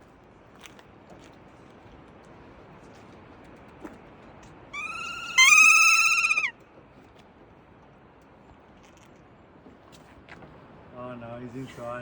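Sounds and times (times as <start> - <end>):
parrot high-pitched wavering call: 4.8 - 6.5.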